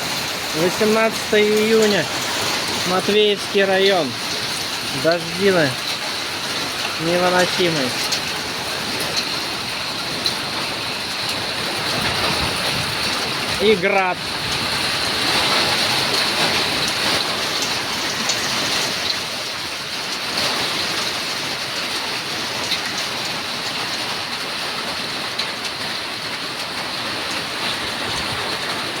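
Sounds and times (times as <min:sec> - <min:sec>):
hail ticking: 0:00.0 - 0:29.0
heavy rain hissing: 0:00.0 - 0:29.0.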